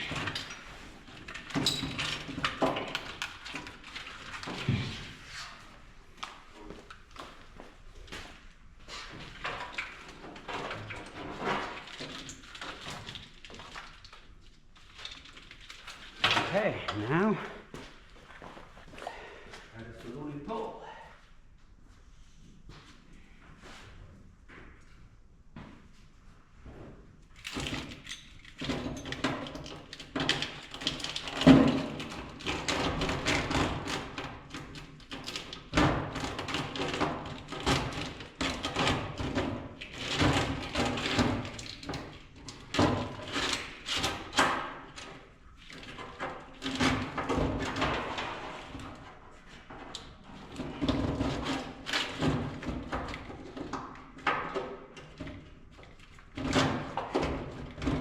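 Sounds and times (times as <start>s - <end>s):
tools knocking and rattling: 0.0s - 4.9s.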